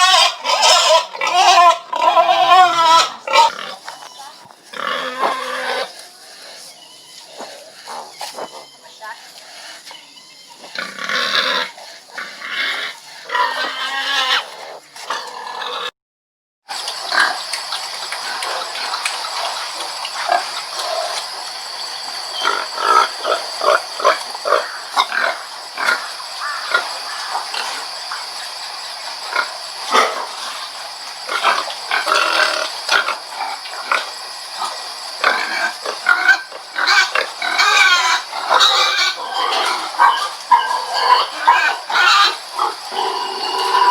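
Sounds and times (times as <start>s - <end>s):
pigs grunting: 0.0s - 15.9s, 17.0s - 43.9s
steady hiss: 16.7s - 43.9s.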